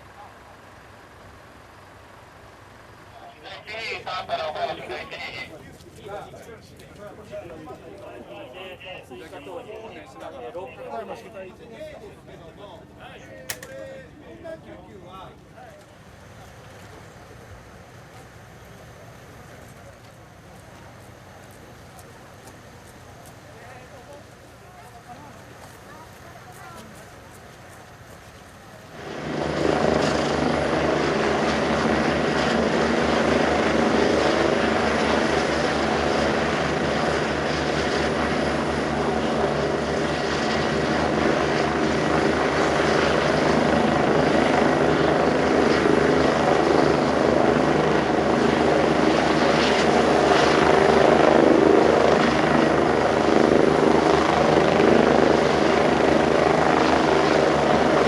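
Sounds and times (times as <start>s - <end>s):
helicopter rotor and engine: 0.0s - 58.0s.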